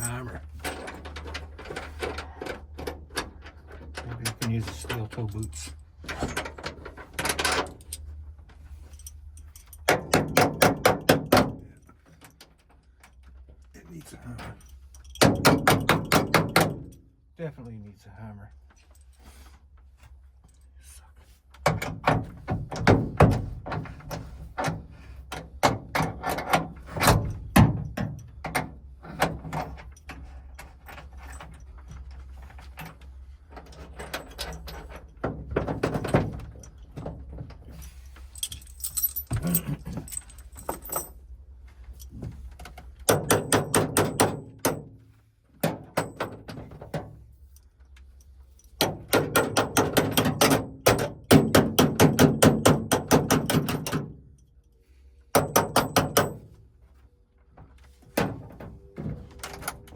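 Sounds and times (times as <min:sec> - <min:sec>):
metal tools clinking and rattling: 0:00.0 - 0:10.9, 0:13.2 - 0:17.0, 0:23.7 - 0:44.8.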